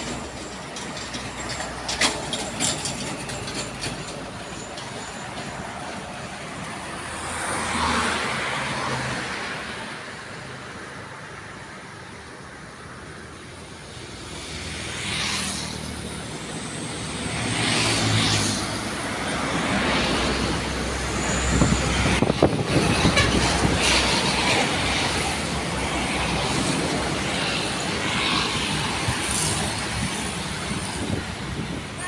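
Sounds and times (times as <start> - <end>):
traffic noise: 0.0 - 32.0.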